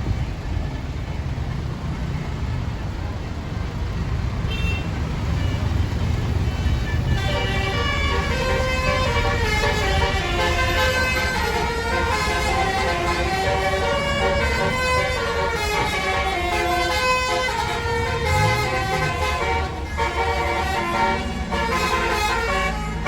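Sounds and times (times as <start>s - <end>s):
bus engine rumble: 0.0s - 23.0s
musical multi-tone air horn: 6.6s - 23.0s.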